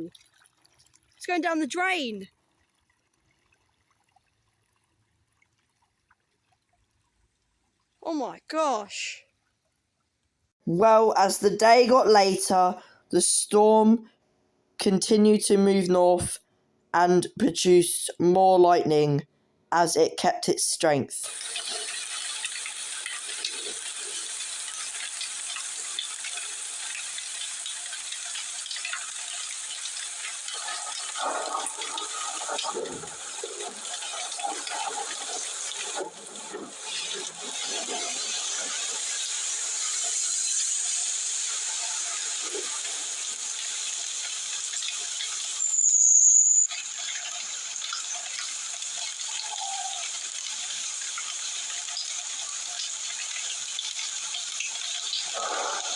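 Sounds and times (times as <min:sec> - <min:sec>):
rain hiss: 0:21.2 - 0:55.9
heavy rain falling: 0:30.4 - 0:40.9.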